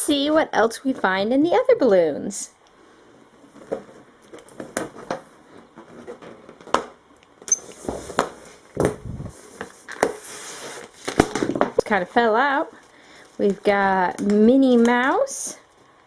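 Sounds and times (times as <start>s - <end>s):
rubbing and crinkling: 7.8s - 12.2s.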